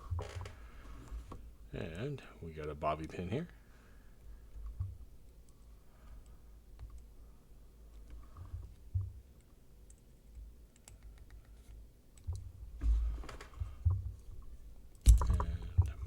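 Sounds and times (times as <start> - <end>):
light clicks and knocks: 8.0 - 16.0
dull low thumps: 12.9 - 14.2.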